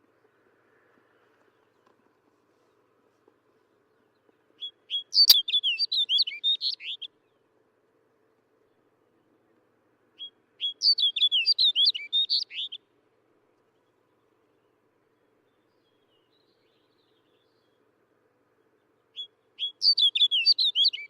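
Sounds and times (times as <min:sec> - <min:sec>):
bird singing warbling phrases: 0:04.6 - 0:07.1, 0:10.2 - 0:12.8, 0:19.2 - 0:21.0.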